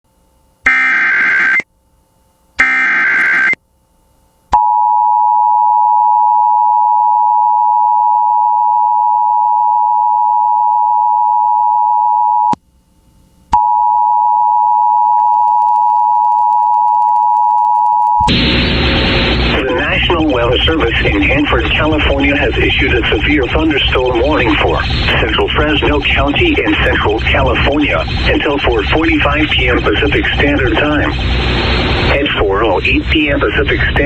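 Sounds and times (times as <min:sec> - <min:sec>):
two-tone attention signal: 0:00.7 - 0:01.6, 0:02.6 - 0:03.6
screeching data bursts: 0:18.2 - 0:34.0.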